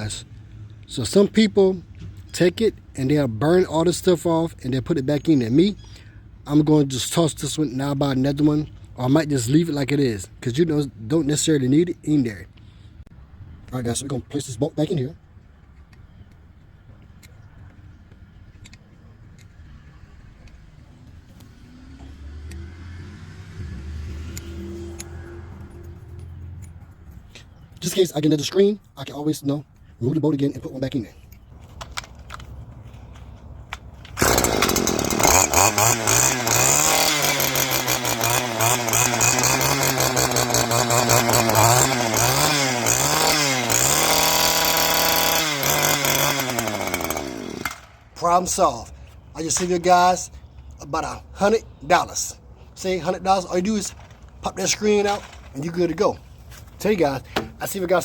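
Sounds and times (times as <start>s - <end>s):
string trimmer engine revving: 20.9s - 26.6s, 34.0s - 48.6s.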